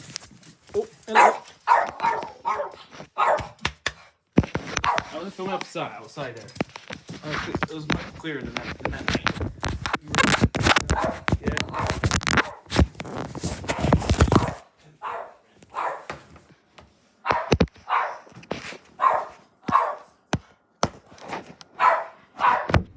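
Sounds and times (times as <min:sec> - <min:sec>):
rustling and scraping: 0:00.0 - 0:03.4, 0:04.4 - 0:20.2, 0:20.9 - 0:22.9
dog barking: 0:01.1 - 0:03.6, 0:04.8 - 0:05.2, 0:10.9 - 0:12.7, 0:13.7 - 0:16.2, 0:17.2 - 0:18.4, 0:19.0 - 0:20.2, 0:21.7 - 0:22.8.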